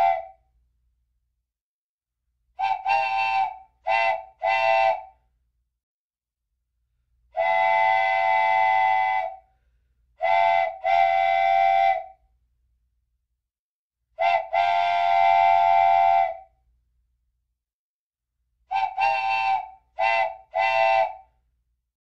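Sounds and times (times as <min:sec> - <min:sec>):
train whistle blasts: 0:00.0 - 0:00.4, 0:02.6 - 0:05.2, 0:07.4 - 0:09.5, 0:10.2 - 0:12.2, 0:14.2 - 0:16.5, 0:18.7 - 0:21.3.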